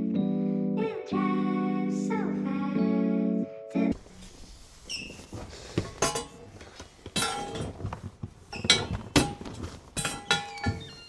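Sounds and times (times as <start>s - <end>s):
metal tools clinking: 5.8s - 11.0s.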